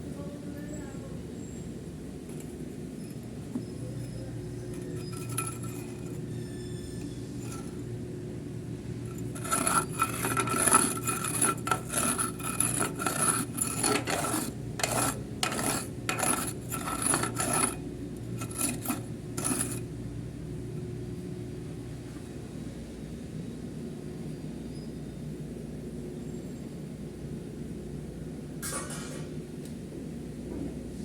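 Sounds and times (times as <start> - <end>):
steady low hum: 0.0 - 22.0
metal scraping on metal: 2.3 - 7.9, 9.1 - 19.9.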